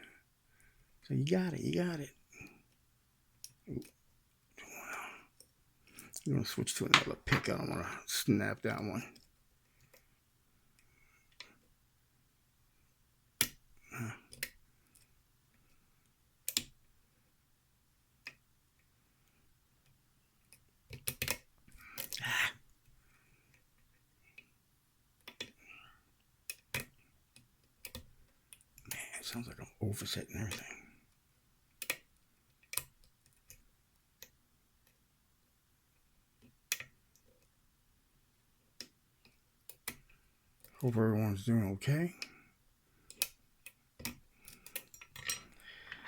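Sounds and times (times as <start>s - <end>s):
lock picking clicks: 31.8s - 32.0s.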